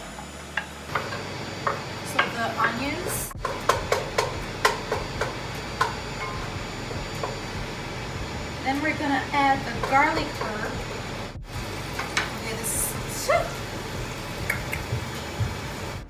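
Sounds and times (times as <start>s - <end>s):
utensil knocking against pan: 3.4s - 6.5s
onions sizzling in frying pan: 11.5s - 16.0s.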